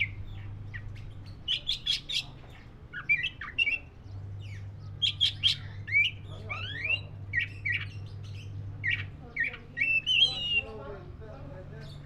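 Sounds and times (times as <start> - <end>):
low steady hum: 0.0 - 12.0
bird singing chirps and whistles: 2.9 - 10.8.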